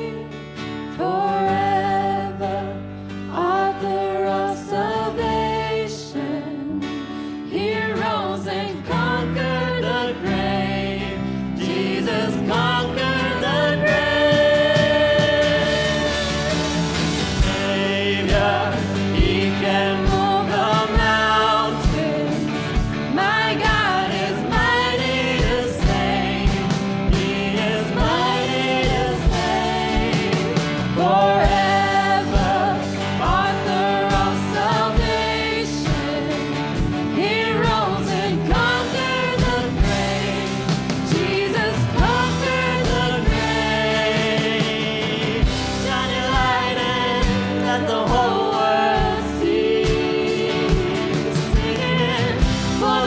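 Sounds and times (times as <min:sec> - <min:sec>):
worship song with band: 0:00.0 - 0:53.0
steady drum beat: 0:11.6 - 0:53.0.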